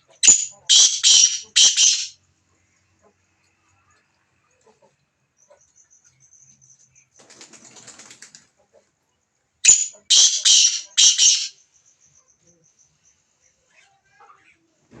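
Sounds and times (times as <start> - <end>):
bird wings flapping: 7.2 - 8.5.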